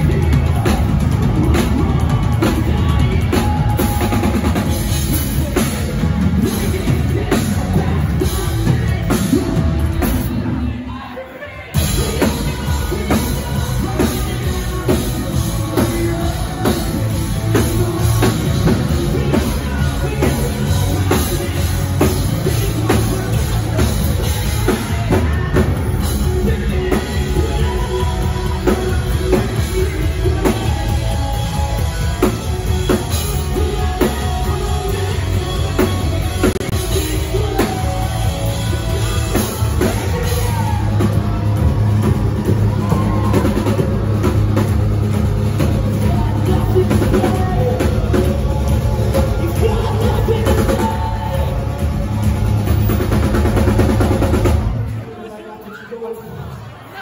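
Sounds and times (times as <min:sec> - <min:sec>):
drum kit beat: 0:00.0 - 0:10.6, 0:11.8 - 0:55.0
bass guitar: 0:00.0 - 0:55.1
distorted electric guitars: 0:00.0 - 0:55.5
person singing: 0:00.0 - 0:57.0.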